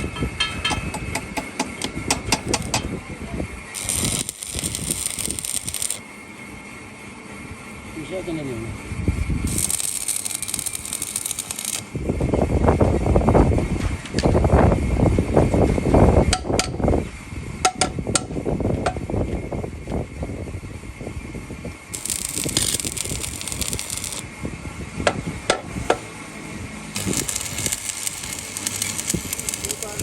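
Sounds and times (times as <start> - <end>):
metallic clicks and knocks: 0.1 - 2.9.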